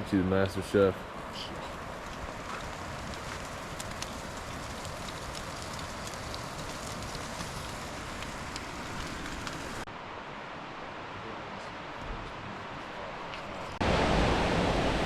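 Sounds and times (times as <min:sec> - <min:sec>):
food frying over a fire: 0:01.1 - 0:09.9
river water rushing: 0:05.9 - 0:15.0.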